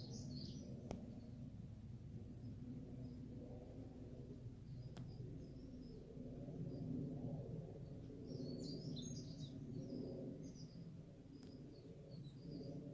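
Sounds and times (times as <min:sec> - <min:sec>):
birds chirping: 0:00.0 - 0:01.4, 0:07.8 - 0:12.8
helicopter rumble: 0:00.0 - 0:12.9.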